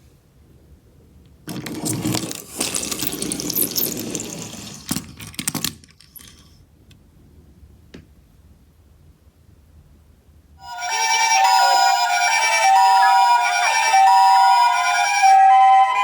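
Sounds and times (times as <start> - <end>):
toy cars rattling together: 1.4 - 6.6.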